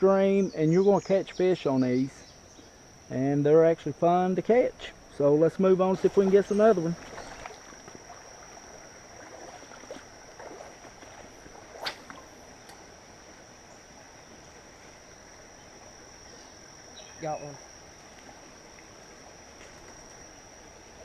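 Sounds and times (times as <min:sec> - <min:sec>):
creek water: 0:00.0 - 0:21.0
insects droning: 0:00.0 - 0:21.0
quick swish: 0:11.8 - 0:12.2.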